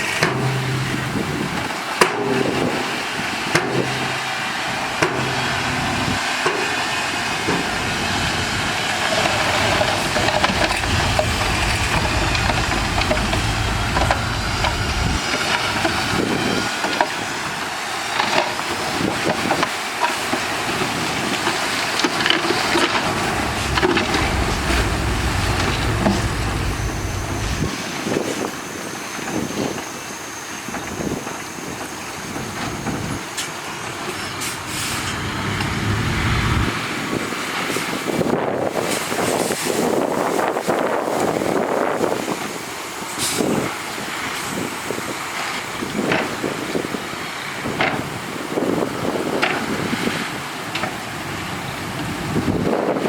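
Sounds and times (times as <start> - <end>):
clanks and knocks: 0.0 - 4.4, 9.1 - 16.0, 21.5 - 27.7
rushing hiss: 0.0 - 18.2, 19.2 - 32.5
truck diesel engine running: 0.0 - 18.2, 20.9 - 28.0.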